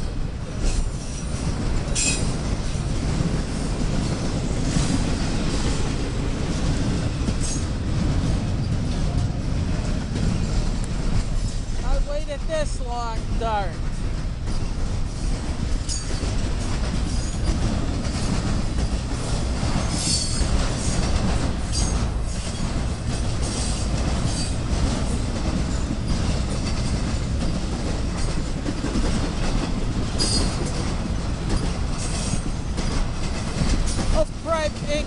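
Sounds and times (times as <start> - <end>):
train cars rumbling: 0.0 - 35.0
train wheels clattering over rails: 0.0 - 35.0
high wheel squeals: 20.0 - 20.5.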